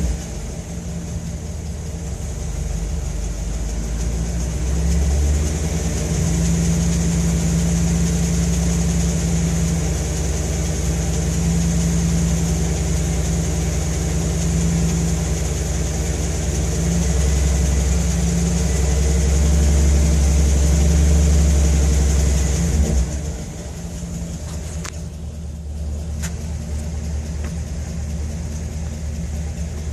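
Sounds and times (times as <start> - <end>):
car engine idling: 0.0 - 29.9.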